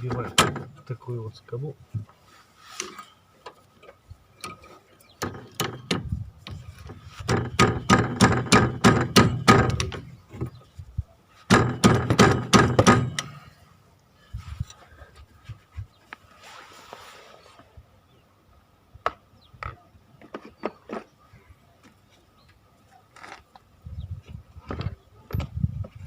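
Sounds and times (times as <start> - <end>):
hammer striking metal: 11.5 - 13.4.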